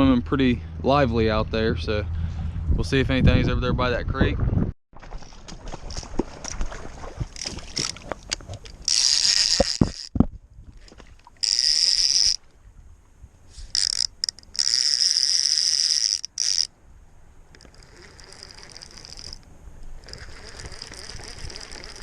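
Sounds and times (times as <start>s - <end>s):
fishing reel whirring: 7.4s - 8.0s, 8.8s - 10.1s, 11.4s - 12.4s, 13.6s - 16.7s, 17.5s - 22.0s.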